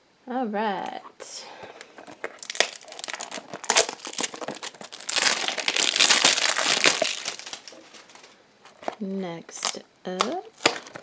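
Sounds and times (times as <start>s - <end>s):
packaging clicks and rustles: 1.5s - 9.0s, 10.5s - 11.0s
packaging crinkling: 1.5s - 9.0s, 10.5s - 11.0s.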